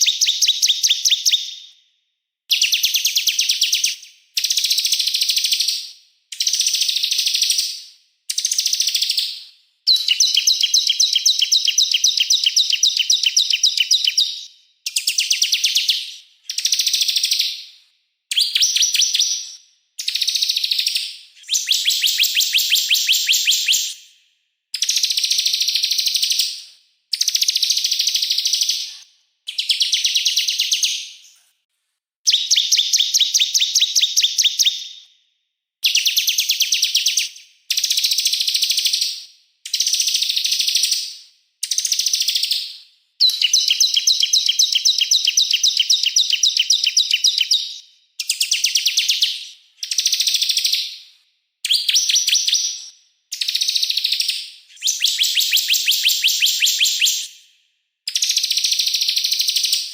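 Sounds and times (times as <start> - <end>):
songbird trilling: 21.4 - 24.0, 54.1 - 57.3.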